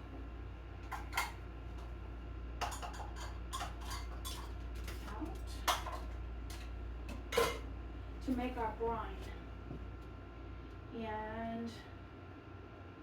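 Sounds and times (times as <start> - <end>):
steady low hum: 0.0 - 13.0
kitchen utensils clinking: 2.6 - 6.7, 7.3 - 7.7.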